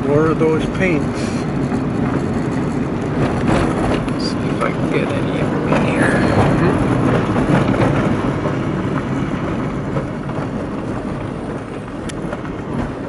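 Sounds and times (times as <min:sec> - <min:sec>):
tyres rumbling on gravel: 0:00.0 - 0:13.0.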